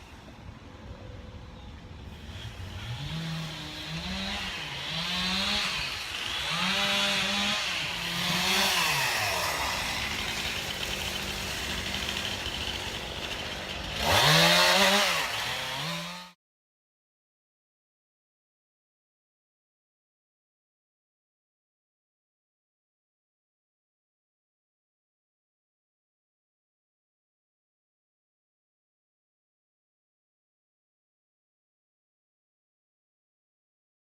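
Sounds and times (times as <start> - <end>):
chainsaw revving while cutting: 2.1 - 16.4.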